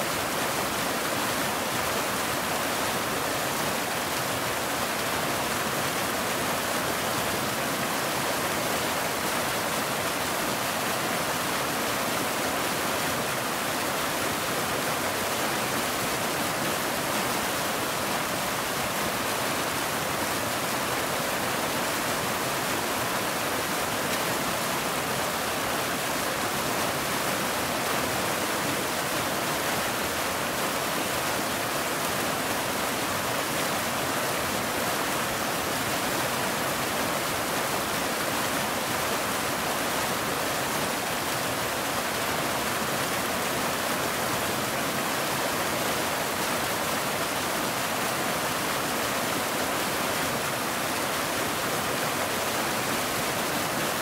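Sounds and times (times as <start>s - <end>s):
waterfall rushing: 0.0s - 54.0s.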